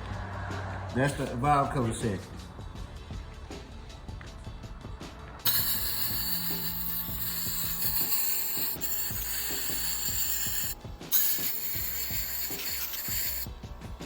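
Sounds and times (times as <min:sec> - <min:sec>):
mechanical whirring with rattle: 0:05.4 - 0:14.0.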